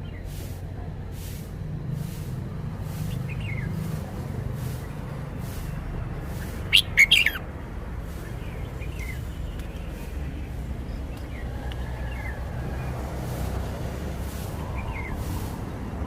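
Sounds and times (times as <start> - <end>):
bulbul singing: 6.3 - 7.5
faint bird chirps: 6.4 - 7.5.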